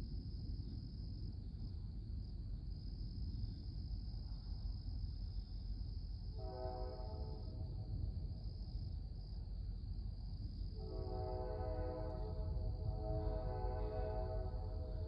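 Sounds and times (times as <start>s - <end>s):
low steady rumble: 0.0s - 15.0s
crickets trilling: 0.3s - 15.0s
distant train horn: 6.4s - 8.1s, 10.8s - 15.0s.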